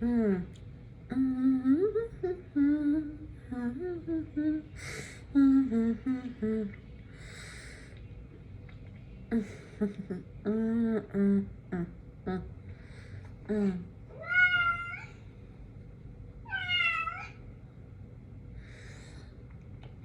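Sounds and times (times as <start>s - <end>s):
woman humming: 0.0s - 6.8s, 9.3s - 12.6s, 13.4s - 14.2s.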